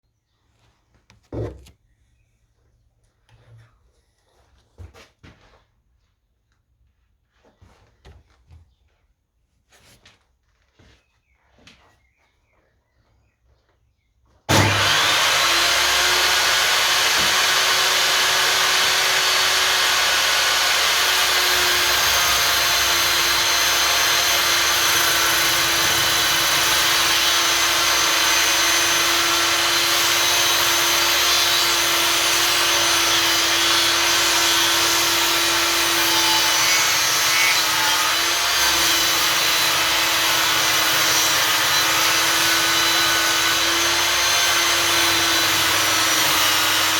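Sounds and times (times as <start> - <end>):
table saw running with whine: 14.5 - 46.9.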